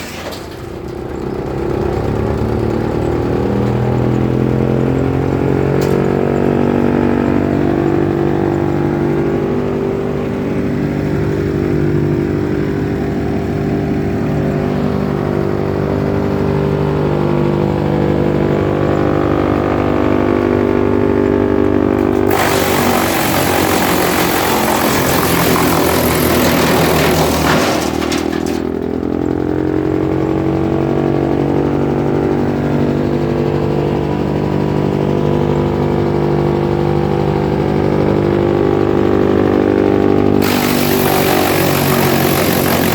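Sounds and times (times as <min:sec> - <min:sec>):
wood chipper engine running: 0:00.0 - 0:42.9
harsh shredding noise: 0:22.0 - 0:28.9, 0:40.4 - 0:42.9.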